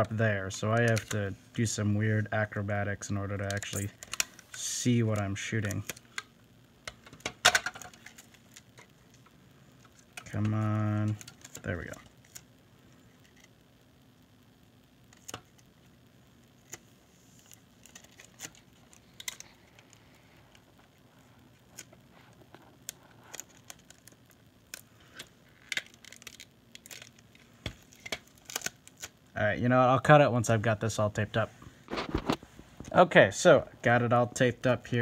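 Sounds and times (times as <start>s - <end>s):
adhesive tape clicks and crinkles: 0.7s - 1.3s, 3.4s - 13.6s, 15.0s - 29.2s.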